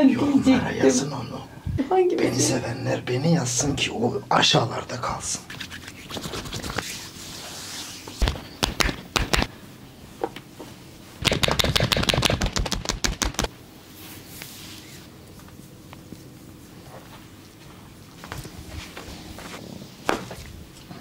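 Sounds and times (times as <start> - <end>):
massage slaps on skin: 8.2 - 9.5, 11.2 - 13.5.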